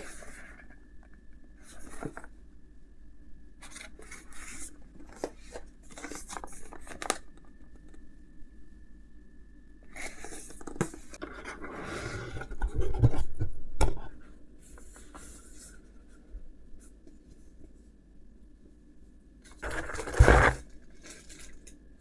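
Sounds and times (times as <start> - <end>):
cardboard and wrapping rustling: 19.5 - 21.7.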